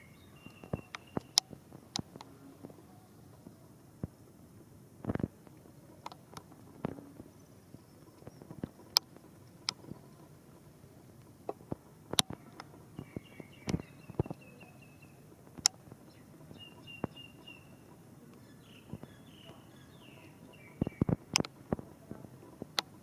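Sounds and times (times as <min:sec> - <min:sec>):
small bird chirping: 0:00.0 - 0:02.1, 0:11.6 - 0:21.6
faint hiss of rain: 0:00.0 - 0:23.0.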